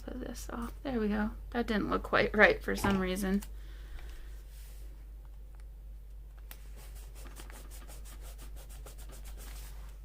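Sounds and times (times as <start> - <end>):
rubbing strokes on paper: 6.7 - 10.0.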